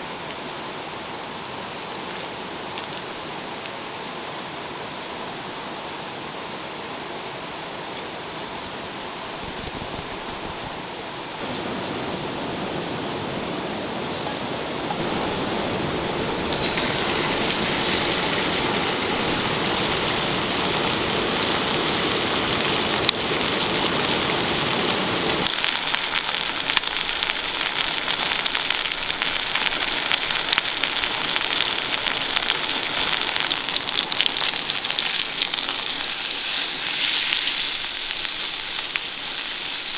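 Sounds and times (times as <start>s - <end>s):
steady rushing hiss: 0.0s - 39.9s
steak sizzling in a pan: 16.3s - 39.9s.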